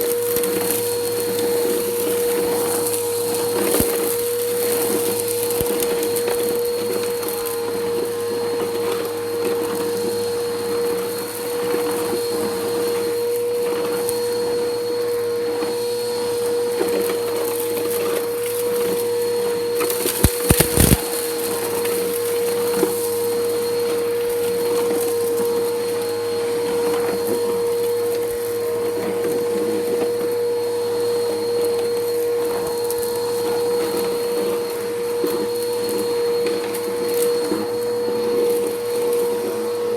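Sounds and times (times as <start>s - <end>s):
vacuum cleaner motor whine: 0.0s - 39.9s
grit crackling in vacuum: 18.8s - 25.5s.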